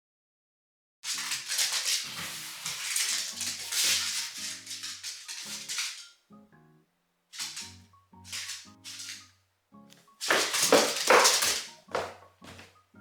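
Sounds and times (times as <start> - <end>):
rattling shaker: 1.0 - 6.2, 7.4 - 9.2, 10.2 - 12.2.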